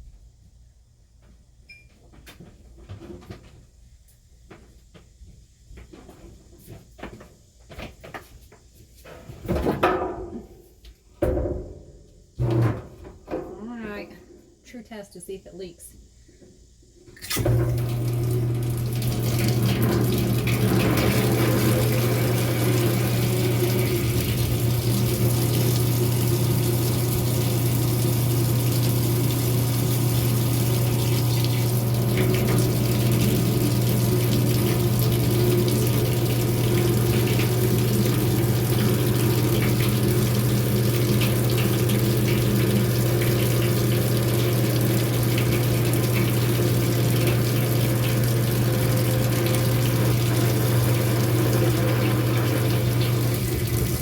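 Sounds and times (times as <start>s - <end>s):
electric water pump humming: 17.1s - 54.0s
water splashing into tin bathtub: 17.2s - 54.0s.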